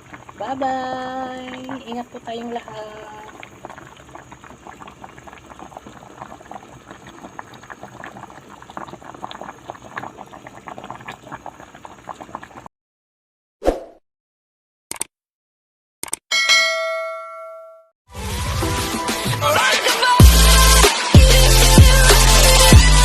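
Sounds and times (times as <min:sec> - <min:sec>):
soup boiling with bubbling pops: 0:00.0 - 0:12.7.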